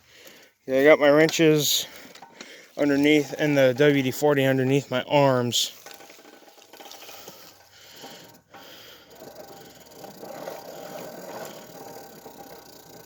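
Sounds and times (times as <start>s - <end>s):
tyres crunching on gravel: 0.6s - 8.2s
chain drive rattling: 5.6s - 13.0s.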